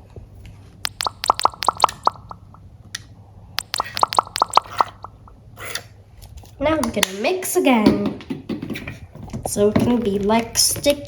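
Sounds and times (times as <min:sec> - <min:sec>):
squeeze bottle sharp pops: 0:00.9 - 0:02.6, 0:03.6 - 0:05.2.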